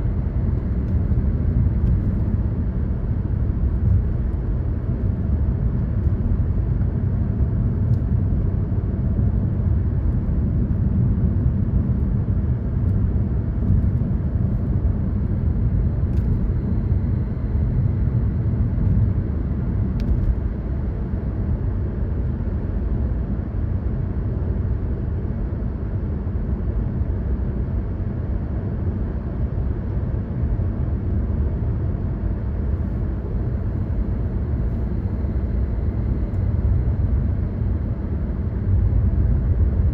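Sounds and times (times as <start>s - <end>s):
car driving road noise: 0.0s - 21.4s, 32.6s - 39.9s.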